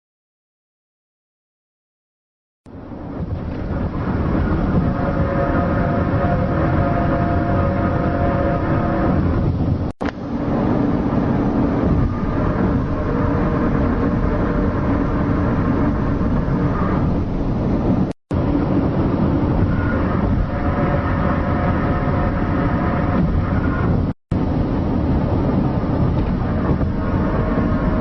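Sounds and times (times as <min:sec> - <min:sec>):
low rumbling drone: 0:02.7 - 0:28.0
faint wavering horn-like tones: 0:03.7 - 0:09.4, 0:11.0 - 0:17.2, 0:19.6 - 0:24.0, 0:26.4 - 0:28.0.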